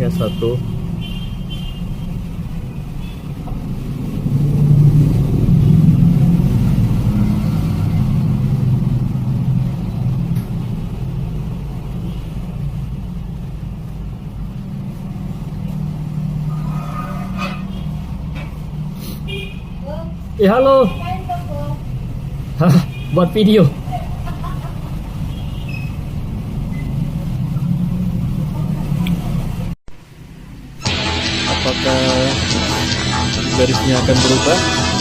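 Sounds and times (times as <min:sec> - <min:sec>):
low engine-like rumble: 0:01.9 - 0:19.0, 0:19.6 - 0:22.6.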